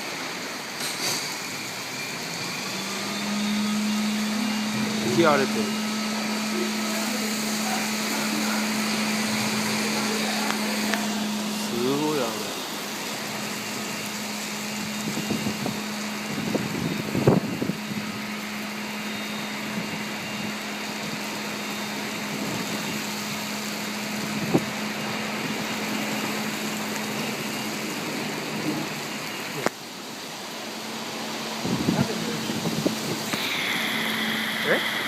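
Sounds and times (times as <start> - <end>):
heavy rain hissing: 0.0 - 35.0
low hum: 1.5 - 29.4.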